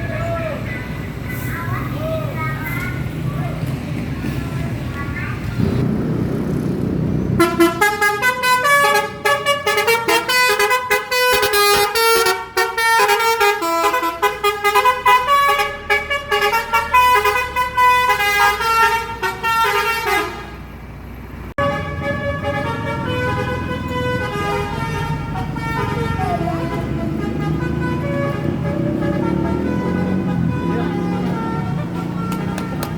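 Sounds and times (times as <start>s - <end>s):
bus engine rumble: 0.0s - 32.9s
bus multi-tone horn tune: 7.4s - 20.8s, 21.6s - 32.9s.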